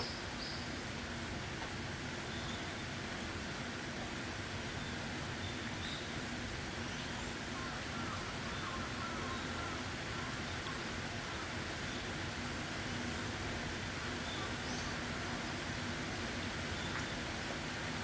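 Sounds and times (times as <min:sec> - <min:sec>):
steady rain: 0:00.8 - 0:18.0.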